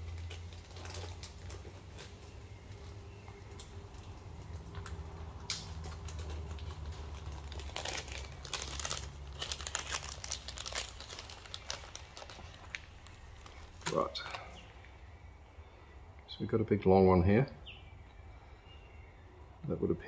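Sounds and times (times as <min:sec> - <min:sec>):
packaging crinkling and rustling: 0:00.0 - 0:14.7.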